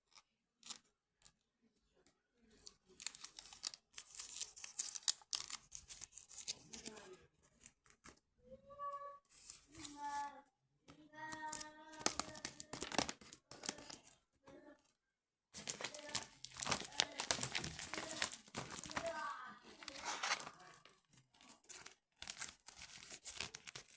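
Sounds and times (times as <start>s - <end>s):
crackling and rustling: 2.5s - 8.2s, 11.3s - 14.3s, 15.6s - 23.9s.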